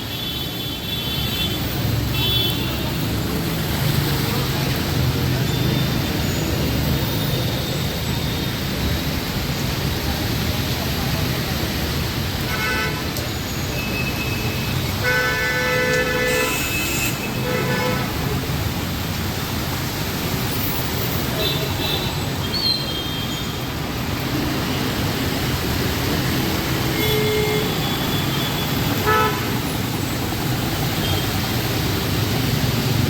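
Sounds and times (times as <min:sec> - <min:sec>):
road traffic: 0:00.0 - 0:33.0
rain hissing: 0:00.1 - 0:33.0
vehicle horns honking: 0:14.4 - 0:18.2, 0:26.8 - 0:29.6.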